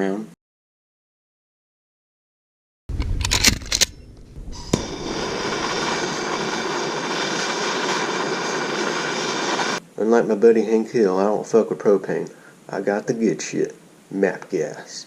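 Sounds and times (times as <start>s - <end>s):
gas torch hissing: 4.2s - 9.8s.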